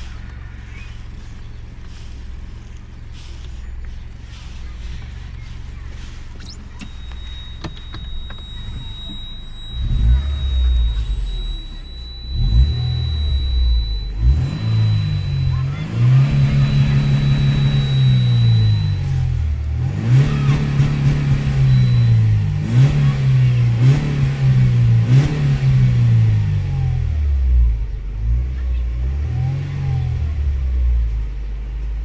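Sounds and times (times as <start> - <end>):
car engine revving: 0.0 - 31.2
high cabin whistle: 6.4 - 24.3.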